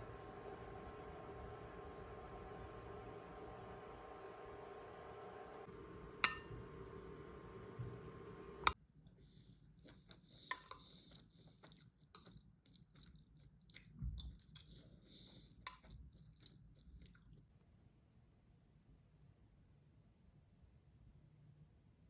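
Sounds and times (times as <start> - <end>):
kitchen appliance humming: 0.0 - 8.8
dishes clinking: 6.2 - 6.4, 10.5 - 10.9.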